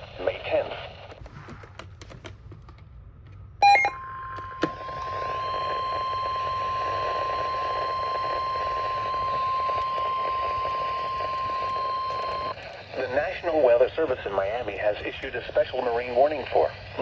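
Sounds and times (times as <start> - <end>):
radio static: 0.0 - 1.2, 4.8 - 17.0
weather radio alarm tone: 3.6 - 17.0.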